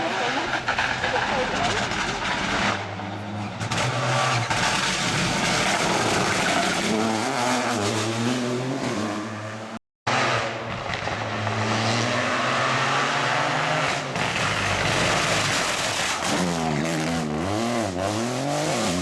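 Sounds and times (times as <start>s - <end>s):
rally car engines revving: 0.0s - 19.0s.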